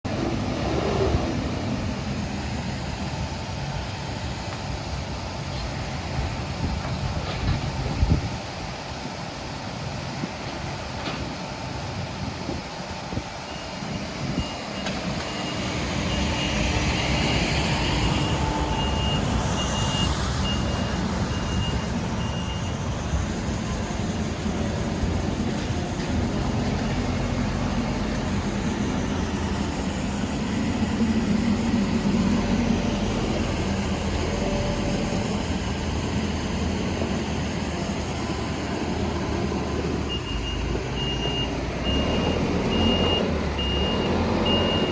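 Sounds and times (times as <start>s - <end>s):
diesel engine running: 0.0s - 44.9s
high reversing beeper: 14.4s - 24.0s, 40.0s - 44.9s.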